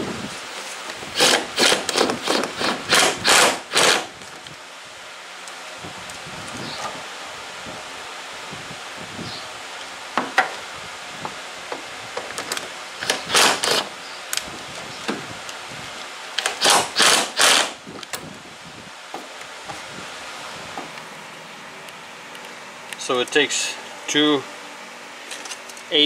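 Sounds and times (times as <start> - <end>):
short noisy bursts: 1.1 - 4.1, 13.0 - 13.9, 16.4 - 17.8.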